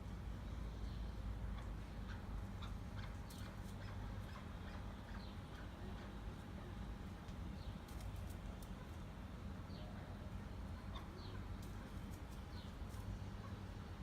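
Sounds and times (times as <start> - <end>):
steady low hum: 0.0 - 14.0
partridge calls: 1.6 - 6.2.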